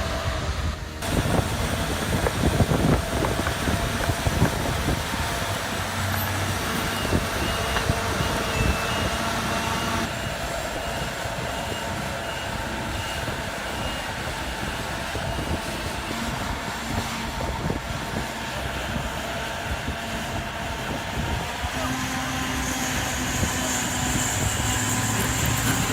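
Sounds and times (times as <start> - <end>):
heavy machinery engine running: 0.0 - 25.9
high-pitched beeping alarm: 5.4 - 17.0.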